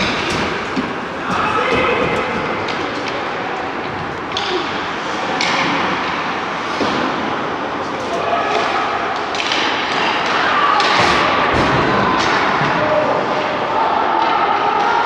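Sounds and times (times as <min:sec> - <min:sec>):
knocks against hockey boards: 0:00.0 - 0:05.8
skating: 0:00.0 - 0:15.0
voices in a rink: 0:00.0 - 0:15.0.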